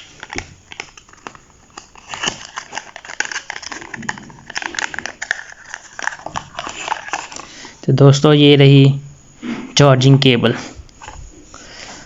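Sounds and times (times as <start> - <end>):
plastic packaging crinkling: 0.0 - 7.8.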